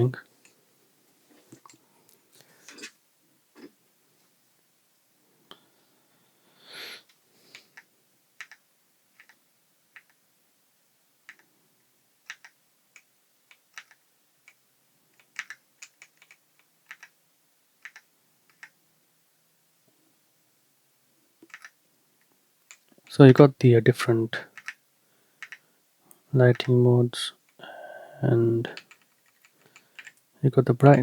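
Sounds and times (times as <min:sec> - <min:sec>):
mechanical keyboard key clicks: 0:12.3 - 0:14.6, 0:15.2 - 0:17.1, 0:21.4 - 0:21.8, 0:25.4 - 0:25.6.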